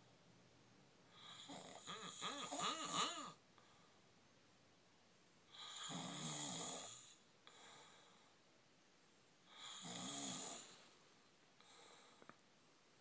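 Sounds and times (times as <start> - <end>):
person snoring: 1.2 - 3.4, 5.6 - 7.2, 9.5 - 10.8.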